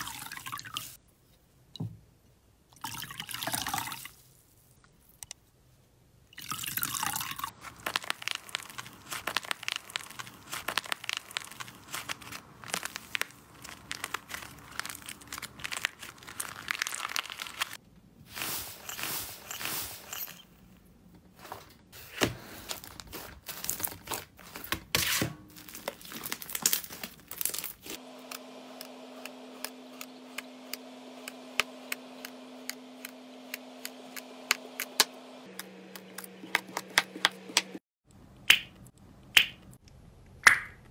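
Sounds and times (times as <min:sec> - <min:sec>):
slime squeezed wet crackling: 0:07.7 - 0:17.8.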